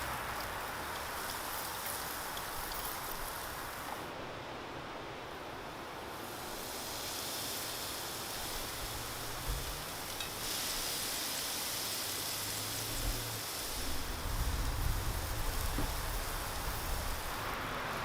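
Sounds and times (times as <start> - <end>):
meat sizzling on a grill: 0.0 - 4.1, 5.4 - 18.0.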